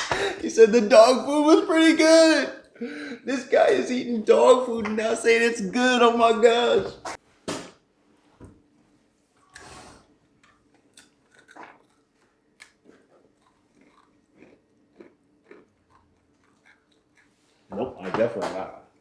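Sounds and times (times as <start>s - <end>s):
person chewing crunchy biscuits: 10.3s - 17.7s.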